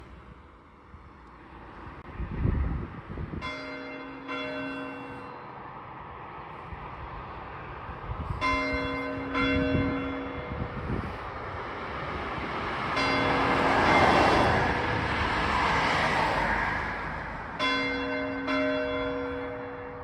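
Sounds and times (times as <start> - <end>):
church bells ringing: 3.4 - 5.6, 8.3 - 10.7, 12.9 - 14.9, 17.6 - 20.0.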